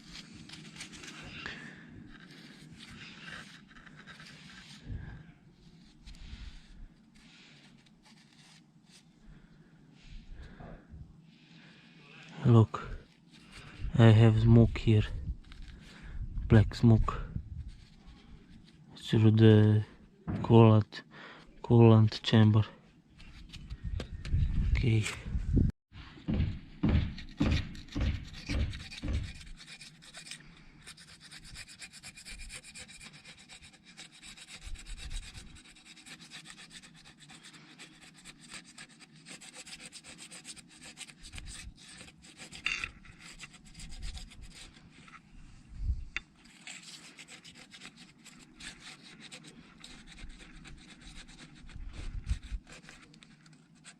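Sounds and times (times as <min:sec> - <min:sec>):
rubbing and scraping handling noise: 0:00.0 - 0:20.9, 0:21.7 - 0:53.9
short dull knocks: 0:26.2 - 0:29.4.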